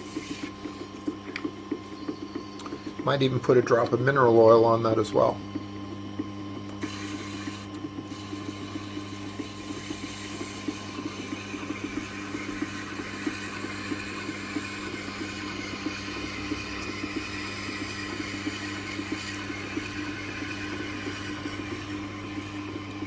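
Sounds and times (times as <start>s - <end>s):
knife blade hissing on honing wheel: 0.0s - 0.8s, 6.8s - 23.0s
motor hum: 0.0s - 23.0s.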